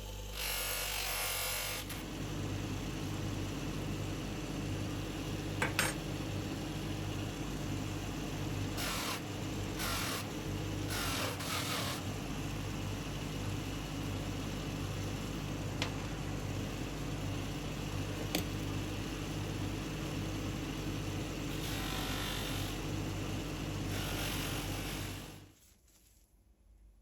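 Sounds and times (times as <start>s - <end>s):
small motor humming: 8.7s - 12.2s, 23.9s - 25.4s.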